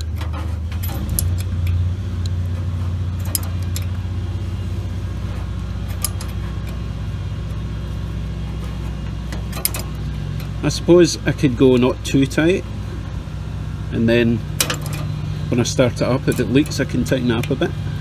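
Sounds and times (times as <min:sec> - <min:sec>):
wrench metallic clicks: 0:00.0 - 0:02.6, 0:03.2 - 0:04.0, 0:05.8 - 0:06.8, 0:09.0 - 0:12.6, 0:14.0 - 0:18.0
lawn mower engine drone: 0:00.0 - 0:18.0.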